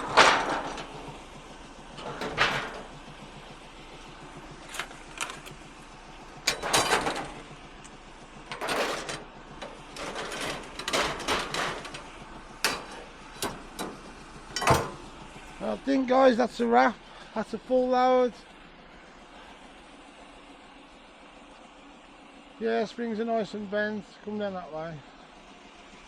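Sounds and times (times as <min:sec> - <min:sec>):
scrap metal clanking: 0:00.0 - 0:15.7.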